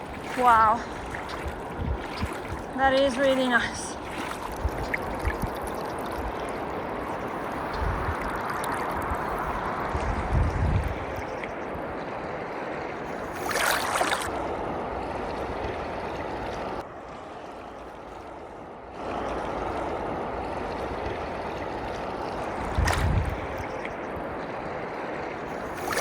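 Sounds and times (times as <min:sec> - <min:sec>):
water rushing: 0:00.0 - 0:26.0.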